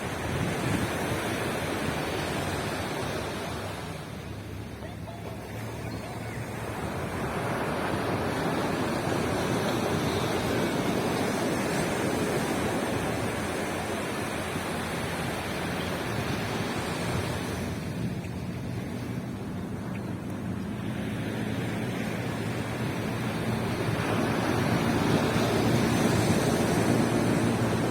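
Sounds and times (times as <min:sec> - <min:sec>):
ocean waves breaking: 0:00.0 - 0:27.9.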